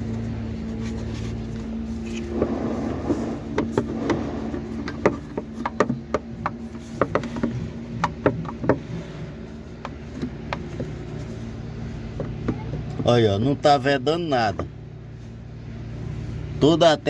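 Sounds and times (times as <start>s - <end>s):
steady low hum: 0.0s - 17.0s
hose clicking and knocking: 2.3s - 9.0s.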